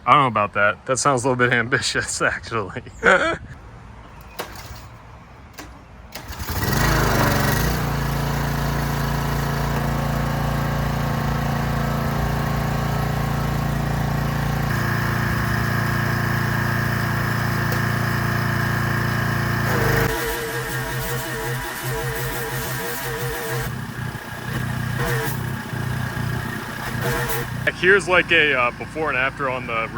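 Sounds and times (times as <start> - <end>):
pressure washer running: 6.2 - 29.9.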